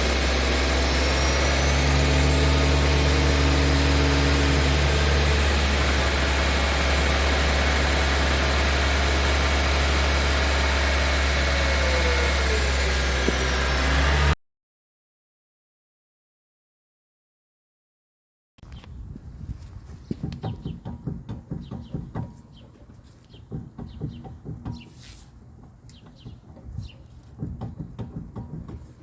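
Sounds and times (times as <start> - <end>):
car engine humming: 0.0 - 14.4.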